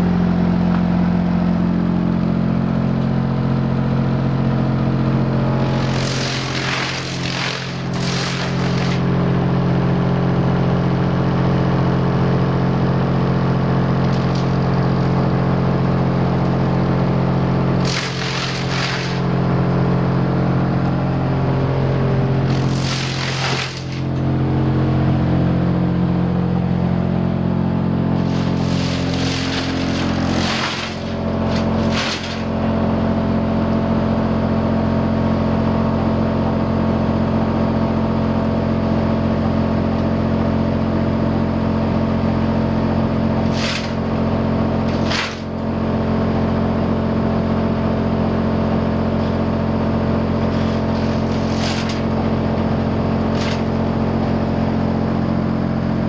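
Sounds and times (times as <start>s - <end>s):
wood chipper drone: 0.0s - 56.0s
harsh noisy bursts: 5.5s - 9.1s, 17.7s - 19.4s, 22.2s - 24.2s, 28.1s - 32.6s, 43.4s - 44.1s, 50.5s - 52.2s.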